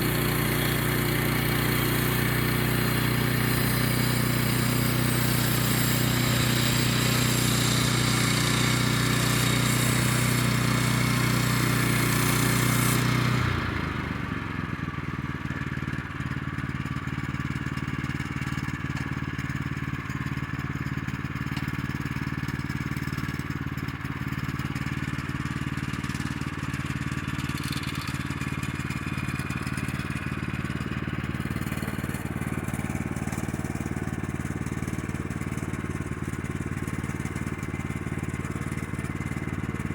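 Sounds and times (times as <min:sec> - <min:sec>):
band saw blade cutting log: 0:00.0 - 0:14.2, 0:27.6 - 0:39.9
small gas engine running: 0:00.0 - 0:39.9.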